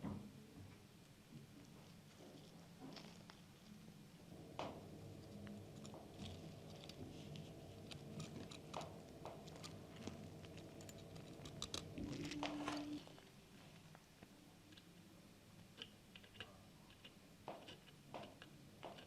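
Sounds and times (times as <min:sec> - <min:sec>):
plastic parts clicking and crinkling: 0:05.4 - 0:14.9, 0:15.7 - 0:19.0.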